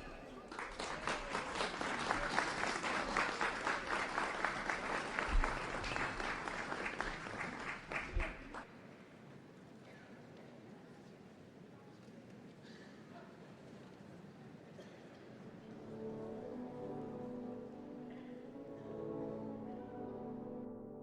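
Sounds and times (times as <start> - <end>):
crowd applauding: 0.0 - 8.7.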